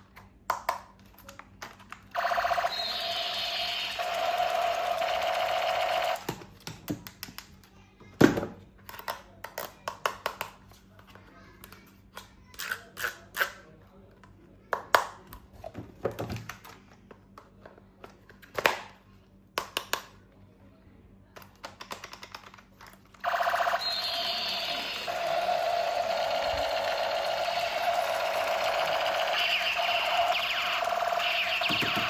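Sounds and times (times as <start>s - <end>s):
electronic toy sound effect: 2.2s - 6.2s, 23.2s - 32.0s
plastic toy clicks and taps: 6.2s - 7.6s, 8.9s - 10.6s, 19.6s - 20.1s, 21.4s - 22.7s.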